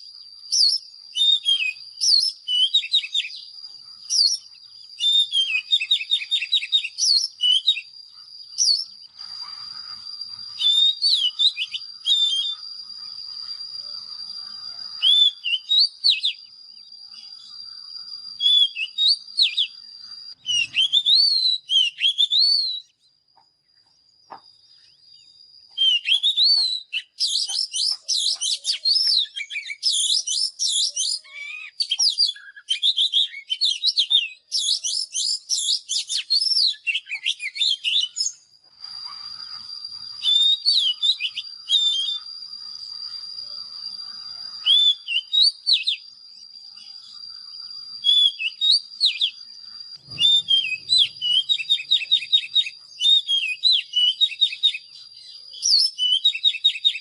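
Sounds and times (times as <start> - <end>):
magpie-robin singing: 0.5 - 7.9, 20.4 - 23.0, 24.8 - 38.4, 46.8 - 57.0.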